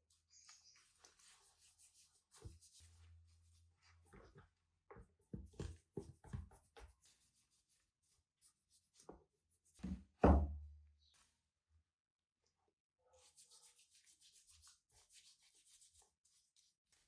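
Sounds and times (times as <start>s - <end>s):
tools knocking on workbench: 9.8s - 10.6s.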